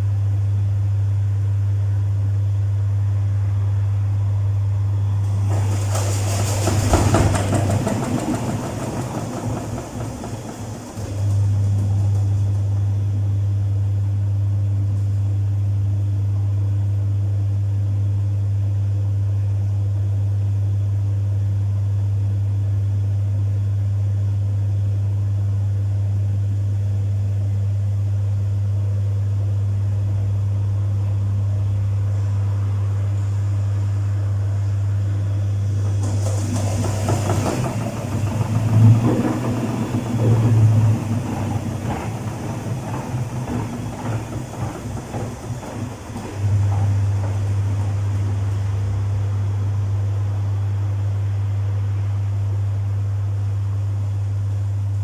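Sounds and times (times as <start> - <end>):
washing machine humming: 0.0 - 55.0
washing machine churning: 2.6 - 15.1, 29.8 - 55.0.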